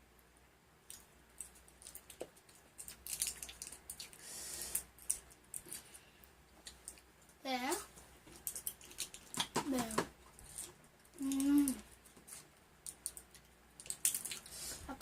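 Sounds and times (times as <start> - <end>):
plastic packaging crackling: 1.4 - 4.2, 12.9 - 14.5.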